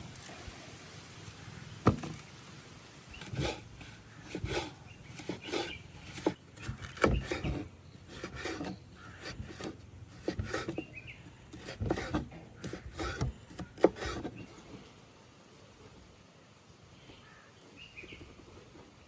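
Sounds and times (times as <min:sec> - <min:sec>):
scrapes and knocks: 0:01.8 - 0:02.3, 0:03.1 - 0:14.9, 0:17.0 - 0:19.0.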